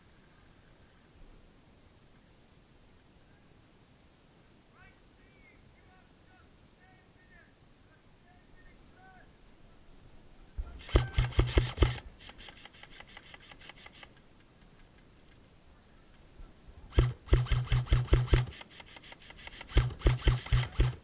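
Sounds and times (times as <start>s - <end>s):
airsoft guns firing bursts: 10.8s - 14.1s, 16.9s - 21.0s.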